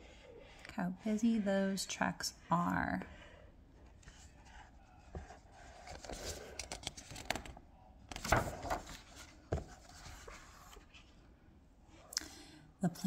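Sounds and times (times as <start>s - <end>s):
book pages rustling: 3.8s - 11.3s.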